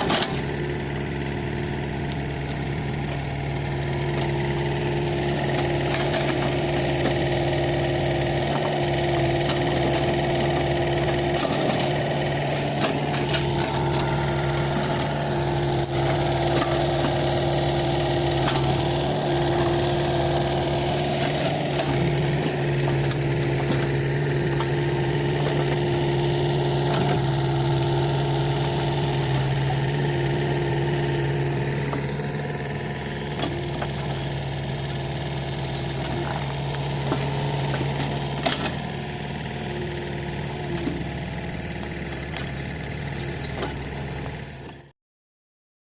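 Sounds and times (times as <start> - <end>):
machine clanks and knocks: 0.0 - 0.6, 8.6 - 15.2
excavator diesel engine running: 0.0 - 44.9.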